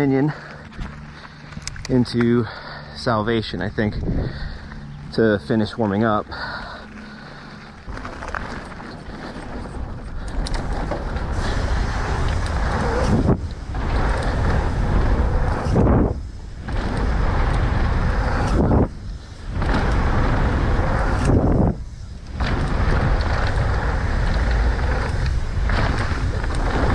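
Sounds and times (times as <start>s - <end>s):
bike tyres on dirt trail: 0.0s - 26.9s
wind rushing on microphone: 3.1s - 4.6s, 9.4s - 26.9s.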